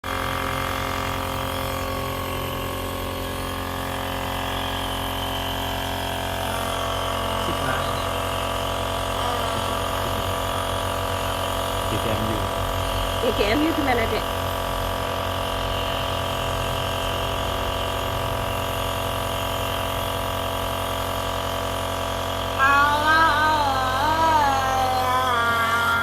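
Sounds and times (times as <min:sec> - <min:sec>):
electric motor humming: 0:00.1 - 0:26.0.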